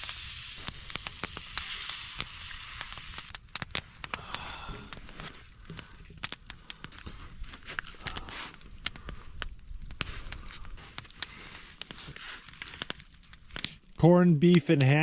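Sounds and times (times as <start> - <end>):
faint sizzle: 0.0 - 6.9
food crackling and popping: 0.0 - 15.0.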